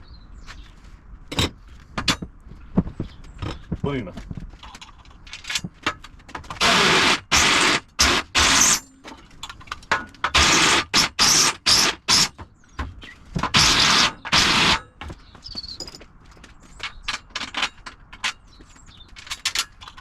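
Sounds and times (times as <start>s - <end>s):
power drill cutting steel: 6.6s - 8.8s, 10.4s - 12.3s, 13.6s - 14.8s.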